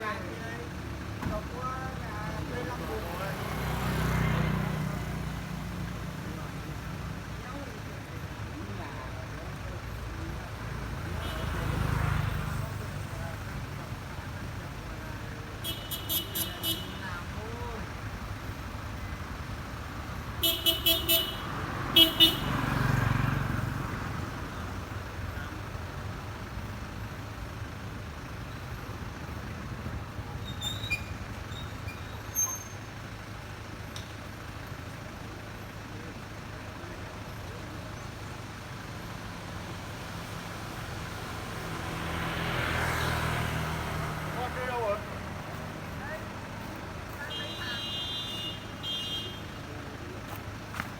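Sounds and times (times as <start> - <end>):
road traffic hum: 0.0 - 50.9
vehicles passing: 0.0 - 50.9
vehicle horn toots: 15.6 - 17.0, 20.4 - 22.7, 47.2 - 49.6.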